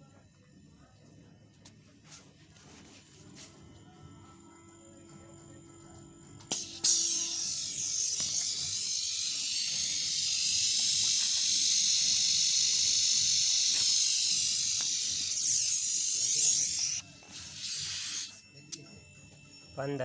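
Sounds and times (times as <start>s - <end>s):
compressed air hissing: 6.5s - 18.5s.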